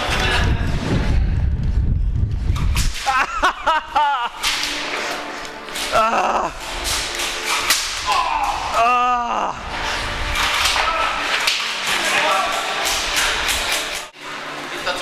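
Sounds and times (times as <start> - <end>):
low rumble of movement: 0.0 - 2.8
person shouting: 8.1 - 9.6.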